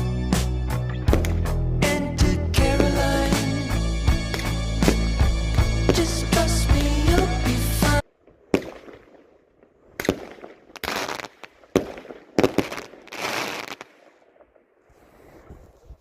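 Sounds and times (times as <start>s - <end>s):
music: 0.0s - 8.0s
fireworks bangs: 8.4s - 14.6s
fireworks crackling hiss: 12.4s - 14.1s.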